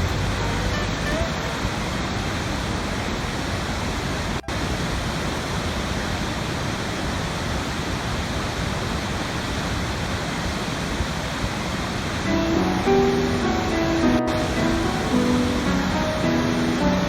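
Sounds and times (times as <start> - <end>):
waterfall rushing: 12.2 - 17.0.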